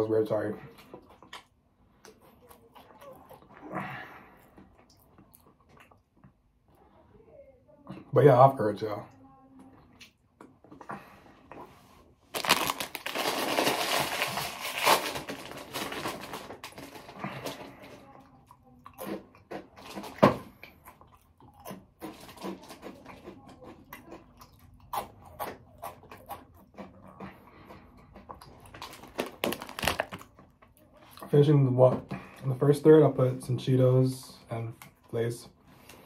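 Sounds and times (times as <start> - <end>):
chewing crunchy chips: 0.6 - 6.4, 12.3 - 31.4
bag crackling: 12.3 - 17.8, 28.8 - 30.3.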